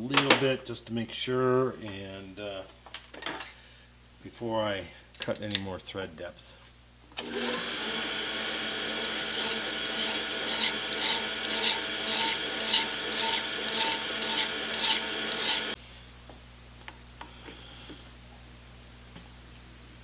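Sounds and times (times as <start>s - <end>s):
lathe running: 7.2s - 15.8s
file scraping metal threads: 8.8s - 15.8s.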